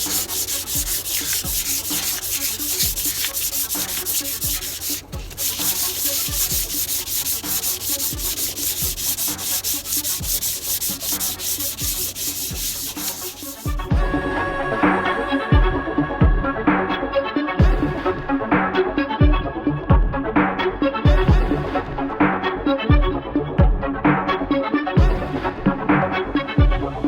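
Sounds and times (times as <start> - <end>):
sandpaper rubbing on metal pipe: 0.0 - 13.9.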